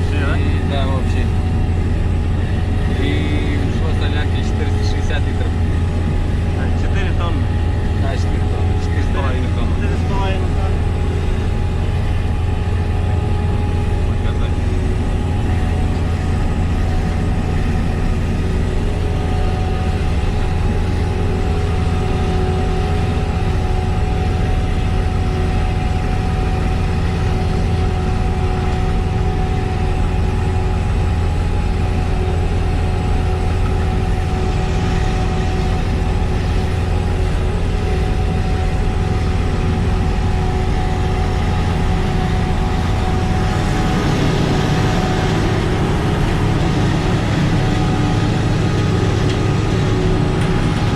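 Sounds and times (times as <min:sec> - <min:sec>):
constant machine whine: 0:00.0 - 0:50.9
harvester engine drone: 0:00.0 - 0:50.9.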